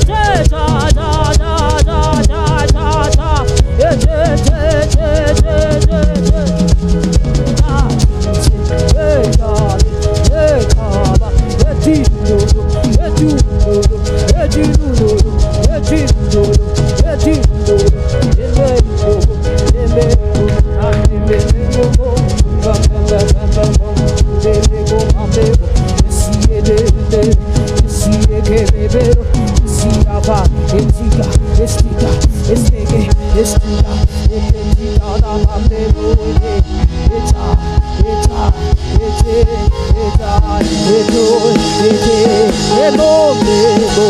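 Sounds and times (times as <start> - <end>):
drums: 0.0 - 44.0.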